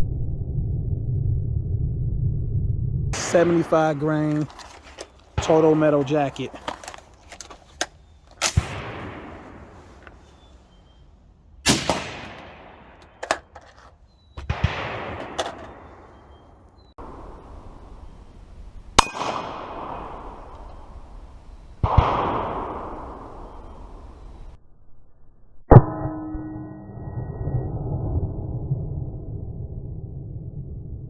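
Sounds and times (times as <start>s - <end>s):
rifle shots: 3.2s - 11.0s, 11.6s - 16.8s
steel target clanging and ringing: 11.7s - 13.8s.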